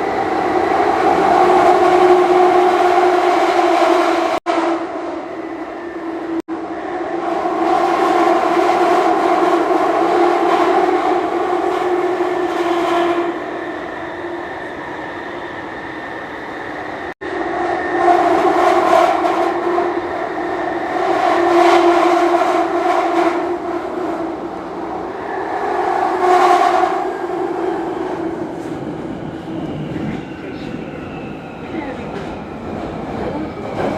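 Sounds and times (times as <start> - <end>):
underground train whine and rumble: 0.0 - 33.9.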